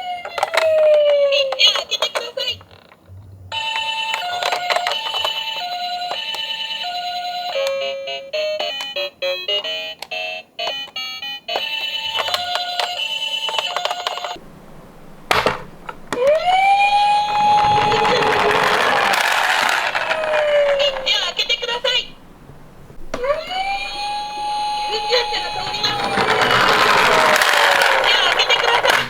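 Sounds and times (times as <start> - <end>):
toy siren two-tone: 3.6 - 14.4, 16.1 - 22.1, 23.1 - 29.0
wailing siren tone: 16.0 - 22.3, 22.9 - 29.0.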